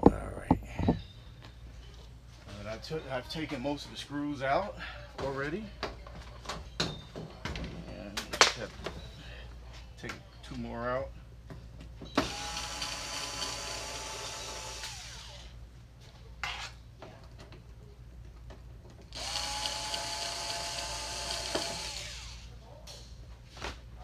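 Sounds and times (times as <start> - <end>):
power screwdriver motor whine: 12.2 - 15.5, 19.1 - 22.5.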